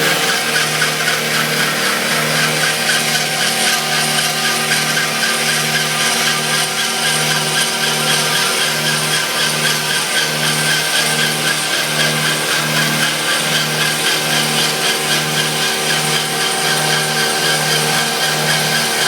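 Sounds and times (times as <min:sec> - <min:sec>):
machine cutting board: 0:00.0 - 0:19.0.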